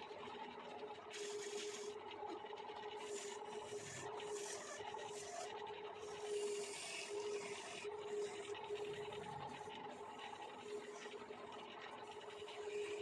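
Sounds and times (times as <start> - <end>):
wood lathe humming: 1.1 - 1.9, 3.0 - 11.2, 12.1 - 13.0.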